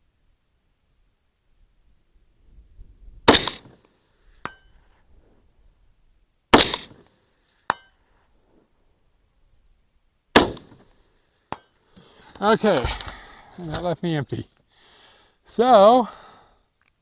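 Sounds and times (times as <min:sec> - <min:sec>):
rifle shots: 0:03.3 - 0:03.8, 0:06.5 - 0:07.0, 0:10.3 - 0:10.9.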